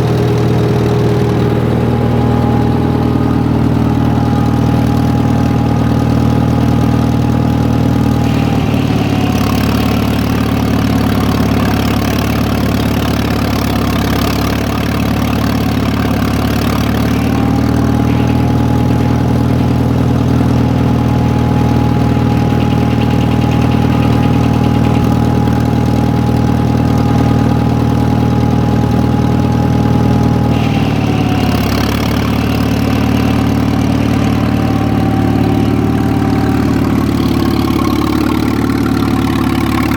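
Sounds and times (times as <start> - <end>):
saw tone: 0.0 - 39.9
tractor engine running: 0.0 - 39.9.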